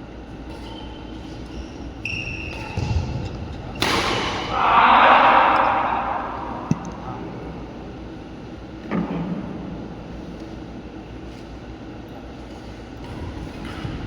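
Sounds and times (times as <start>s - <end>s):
shoe squeak: 0.5s - 3.8s
loud rushing noise: 4.5s - 6.9s.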